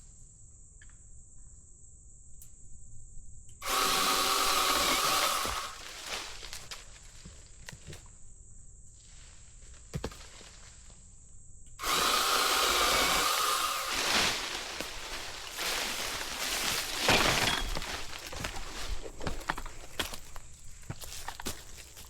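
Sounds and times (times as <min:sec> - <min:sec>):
pole saw cutting wood: 0:03.6 - 0:06.7, 0:11.8 - 0:19.6.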